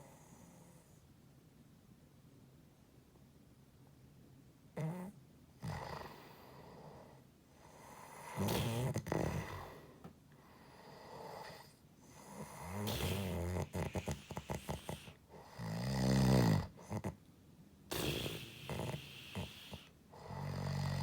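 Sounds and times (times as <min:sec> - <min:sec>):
noisy breath: 0:06.0 - 0:15.5, 0:17.9 - 0:21.0
person snoring with snorts: 0:08.2 - 0:09.8, 0:12.4 - 0:17.2, 0:17.9 - 0:21.0.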